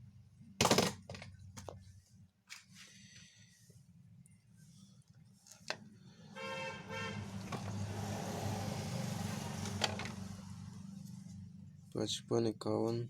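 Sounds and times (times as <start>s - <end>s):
vehicle passing: 6.1s - 11.9s
vehicle horn honks: 6.3s - 7.4s.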